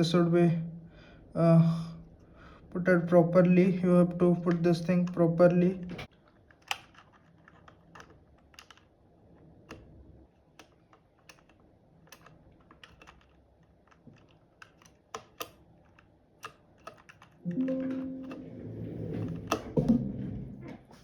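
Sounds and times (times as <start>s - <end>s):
keyboard keys clicking: 6.6s - 8.9s, 9.6s - 20.5s.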